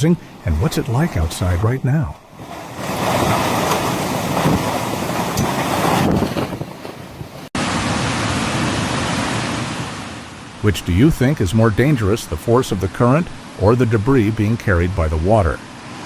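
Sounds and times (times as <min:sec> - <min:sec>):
wind buffeting microphone: 0:00.0 - 0:07.5
rushing churning water: 0:00.0 - 0:16.0.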